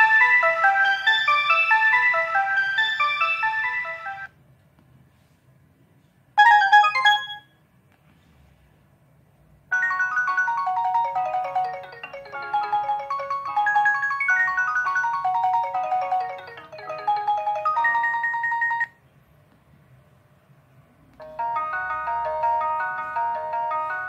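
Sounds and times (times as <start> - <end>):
synthesized ringtone melody: 0.0 - 4.3, 6.4 - 7.5, 9.7 - 19.0, 21.2 - 24.0
brief phone chime: 6.4 - 7.5.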